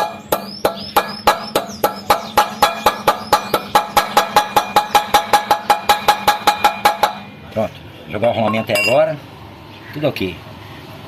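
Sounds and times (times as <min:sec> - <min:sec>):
hammer blows on metal: 0:00.0 - 0:07.3.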